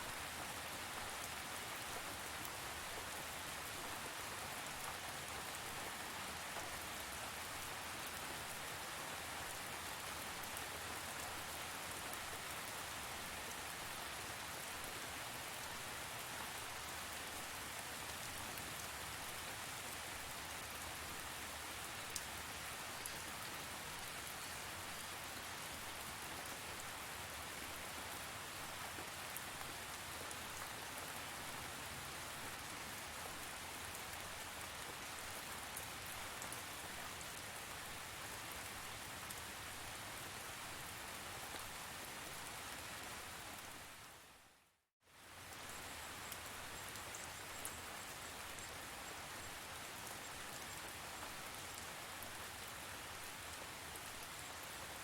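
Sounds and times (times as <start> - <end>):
steady rain falling: 0.0 - 55.0.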